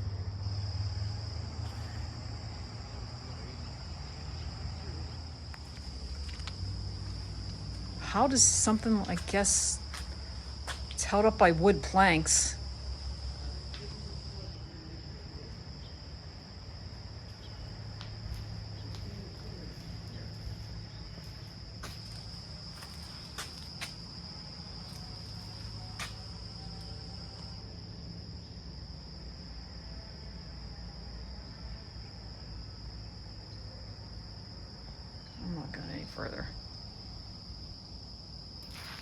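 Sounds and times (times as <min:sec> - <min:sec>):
insect trill: 0:00.0 - 0:39.0.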